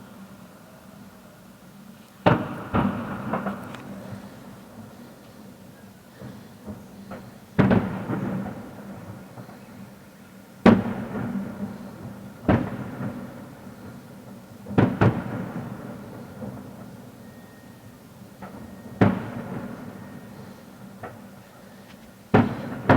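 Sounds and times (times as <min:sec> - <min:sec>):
fireworks bursting with echo: 0:02.2 - 0:05.0, 0:06.3 - 0:17.4, 0:18.4 - 0:21.5, 0:22.1 - 0:22.9
faint firework pops: 0:10.6 - 0:14.0, 0:14.7 - 0:15.8, 0:21.9 - 0:22.9.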